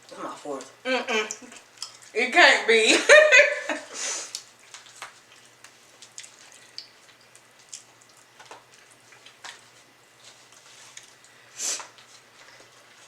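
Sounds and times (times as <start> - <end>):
wet chewing mouth sounds: 0.0 - 2.1, 4.2 - 13.0.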